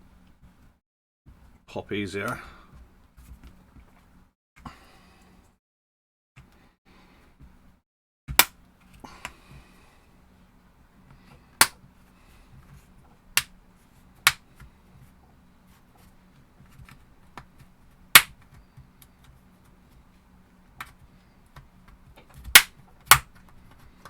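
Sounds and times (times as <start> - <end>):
plastic clips snapping loose: 18.2 - 18.4, 22.2 - 23.4.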